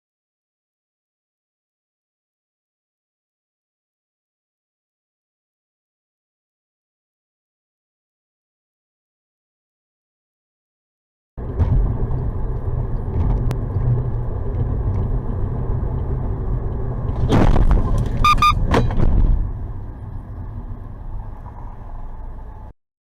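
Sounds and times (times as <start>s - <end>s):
car engine and road rumble: 11.4s - 22.8s
brief high-pitched tone: 18.2s - 18.6s.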